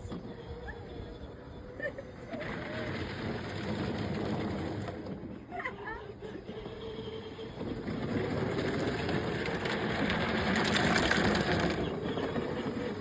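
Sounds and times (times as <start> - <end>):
atv engine running: 6.5 - 13.0
dense mechanical rattle: 7.8 - 13.0.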